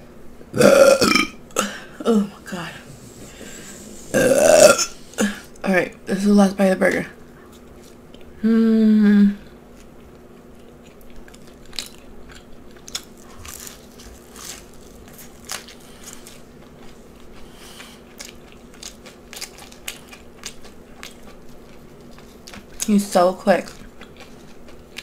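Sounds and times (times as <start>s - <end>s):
chewing and crunching food: 6.9s - 8.4s, 9.5s - 25.0s
person humming: 8.4s - 9.5s.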